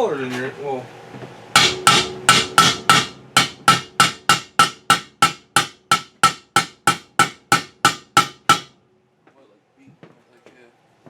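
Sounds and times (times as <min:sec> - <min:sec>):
hammer striking metal: 0:01.6 - 0:08.8.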